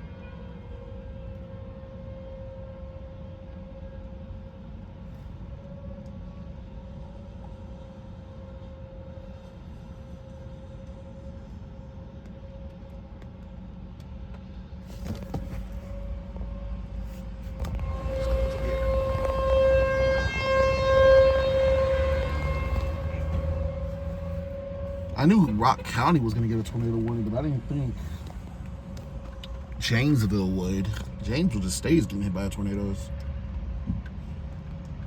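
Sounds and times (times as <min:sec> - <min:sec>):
distant warning siren wailing: 0:15.5 - 0:33.9
low rumble: 0:15.5 - 0:35.0
rushing noise: 0:16.8 - 0:33.1.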